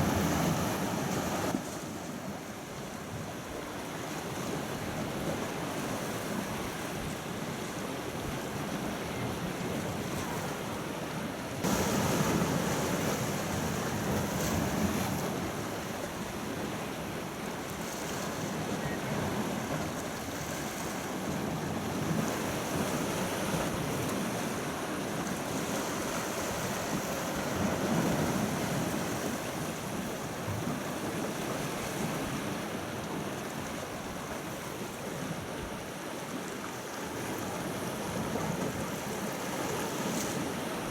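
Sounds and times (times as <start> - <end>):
sea rushing: 0.0 - 40.9.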